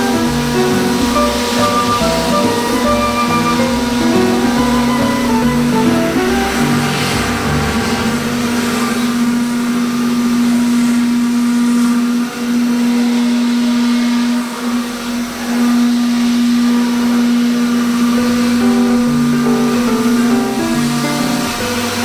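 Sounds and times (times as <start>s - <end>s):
milling machine spindle humming: 0.0s - 9.2s
noisy hiss: 0.0s - 9.3s, 17.8s - 22.0s.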